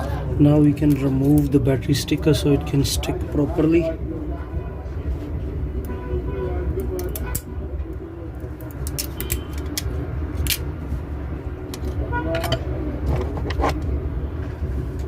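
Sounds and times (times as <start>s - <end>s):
clicks and taps of phone parts: 8.6s - 10.7s.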